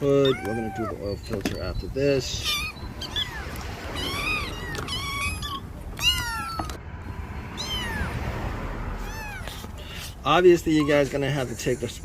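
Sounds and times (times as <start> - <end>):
animal high cries: 0.0 - 1.2, 2.2 - 6.8, 7.5 - 8.2.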